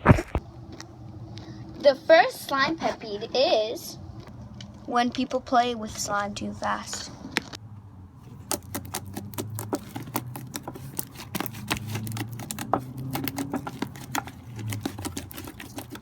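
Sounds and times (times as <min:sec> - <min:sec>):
slime squished by hand: 0:08.3 - 0:16.0.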